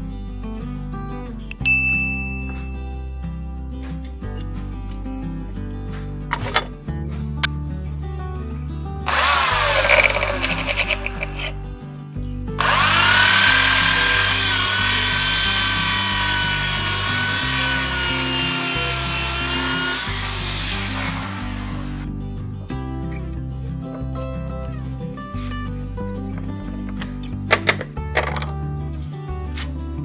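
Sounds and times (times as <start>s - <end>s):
background music: 0.0s - 30.0s
power tool whining: 9.1s - 11.6s, 12.6s - 22.1s.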